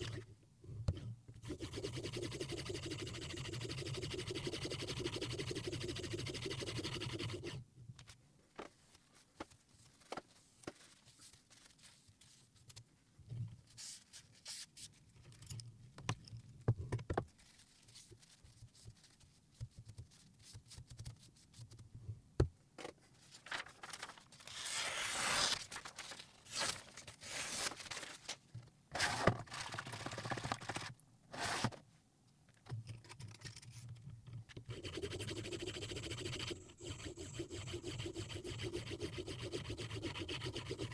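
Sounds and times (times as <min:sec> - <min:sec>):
rubbing strokes: 0:34.7 - 0:40.9.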